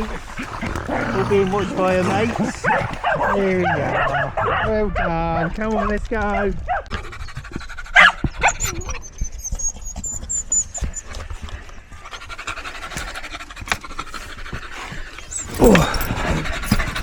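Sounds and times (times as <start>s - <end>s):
dogs panting: 0.0s - 17.0s.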